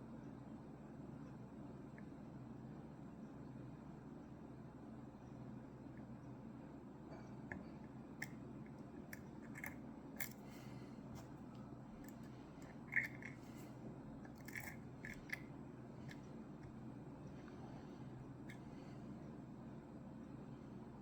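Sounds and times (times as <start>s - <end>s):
lock pick clicking and scraping: 9.1s - 10.4s, 12.0s - 13.6s, 14.3s - 15.5s.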